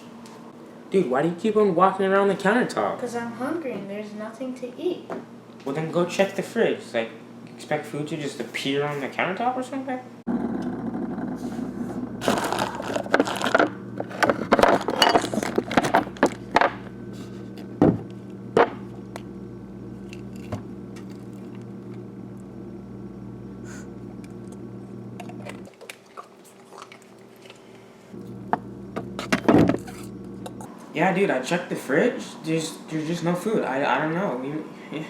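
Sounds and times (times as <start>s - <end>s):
refrigerator humming: 5.7s - 35.0s
containers rattling and clinking: 12.2s - 16.8s.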